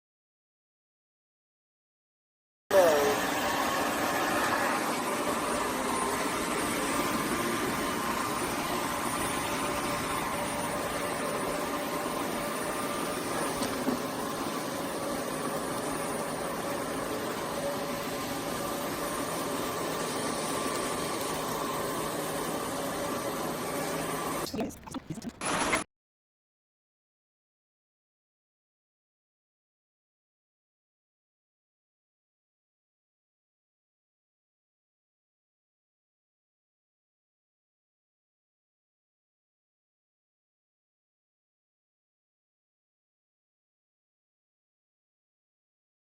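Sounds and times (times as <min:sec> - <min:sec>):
vacuum mop motor drone: 0:02.7 - 0:24.4.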